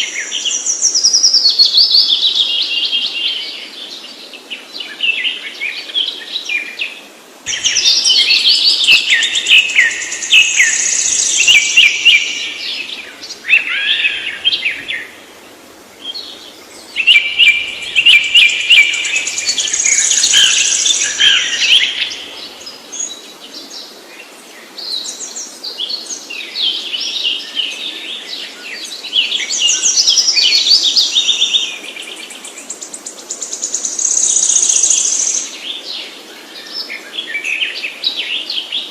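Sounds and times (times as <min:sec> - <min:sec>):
songbird chirping and trilling: 0:07.5 - 0:24.0, 0:24.7 - 0:38.9.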